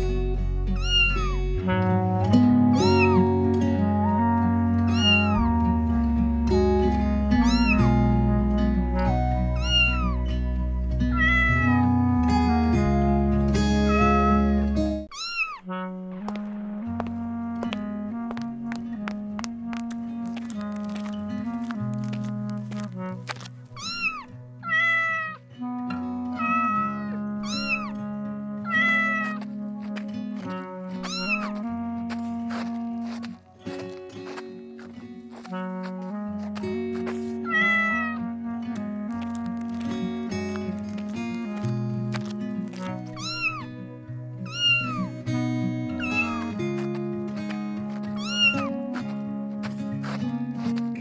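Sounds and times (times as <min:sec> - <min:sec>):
background music: 0:00.0 - 0:15.1, 0:15.7 - 0:51.0
cat meowing: 0:00.7 - 0:01.4, 0:02.8 - 0:03.2, 0:04.9 - 0:05.5, 0:07.4 - 0:07.8, 0:09.6 - 0:10.2, 0:11.1 - 0:11.9, 0:13.9 - 0:14.4, 0:15.1 - 0:15.7, 0:23.8 - 0:25.4, 0:26.4 - 0:28.0, 0:28.7 - 0:29.4, 0:31.0 - 0:31.6, 0:37.4 - 0:38.2, 0:43.1 - 0:43.7, 0:44.5 - 0:45.1, 0:46.0 - 0:46.5, 0:48.2 - 0:48.7.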